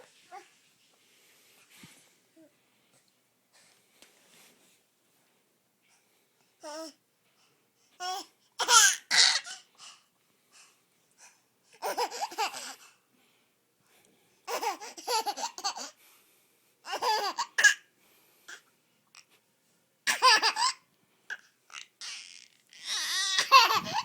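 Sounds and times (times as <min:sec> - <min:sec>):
baby laughing: 0:08.0 - 0:09.7, 0:11.8 - 0:12.8, 0:14.5 - 0:16.0, 0:16.9 - 0:17.8, 0:20.1 - 0:20.8, 0:21.7 - 0:24.0.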